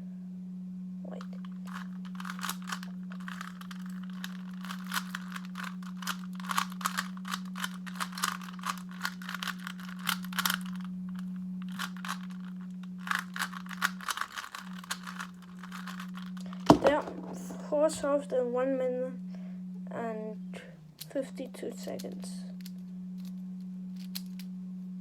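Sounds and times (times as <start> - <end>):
steady low hum: 0.0 - 25.0
puzzle cube clicking and rattling: 1.2 - 17.3, 21.9 - 23.4, 24.0 - 24.4.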